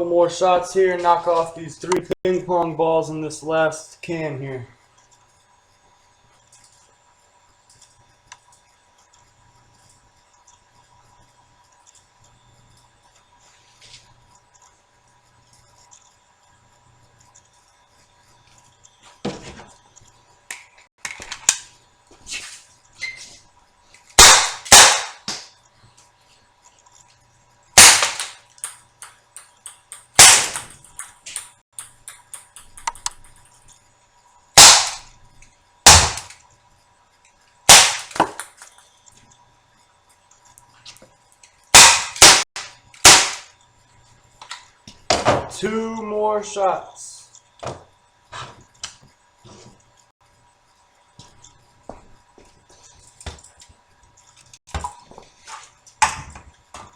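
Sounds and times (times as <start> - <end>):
gun handling clicks and knocks: 20.5 - 21.7
airsoft pistol shots: 24.2 - 25.5, 27.8 - 28.4, 30.2 - 30.8, 34.6 - 35.1, 35.9 - 36.3, 37.7 - 38.3, 41.8 - 43.5.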